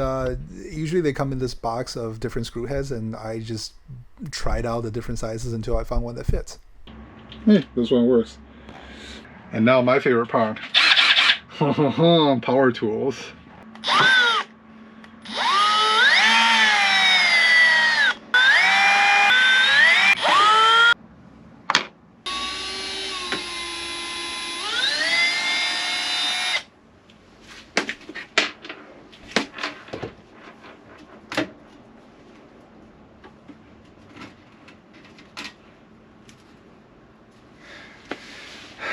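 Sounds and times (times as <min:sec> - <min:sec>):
power drill motor whining: 0:10.7 - 0:11.4, 0:13.8 - 0:14.6, 0:15.2 - 0:21.0, 0:22.3 - 0:26.7.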